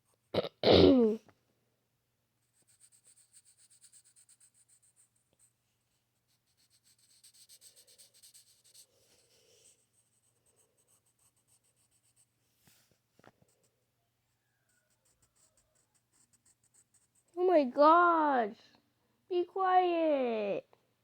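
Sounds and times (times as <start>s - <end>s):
pencil scratching on paper: 2.4s - 5.6s, 6.2s - 13.8s, 14.4s - 17.4s.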